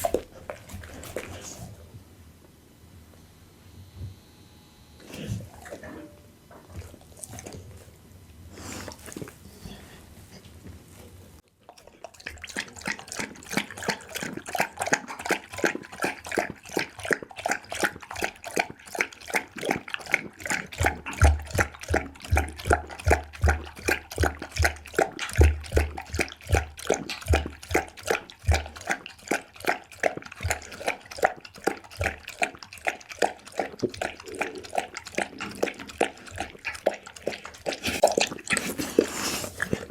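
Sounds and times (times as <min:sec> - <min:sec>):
dog chewing meat: 0:00.0 - 0:01.8, 0:06.6 - 0:08.0, 0:11.6 - 0:39.9.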